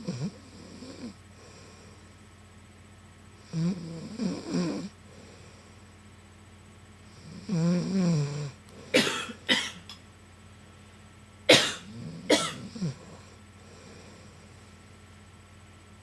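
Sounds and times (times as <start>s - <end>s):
woman snoring: 0.0s - 1.8s, 3.4s - 5.4s, 7.2s - 9.0s, 11.8s - 14.4s
short cough-like bursts: 8.9s - 10.0s, 11.5s - 12.9s.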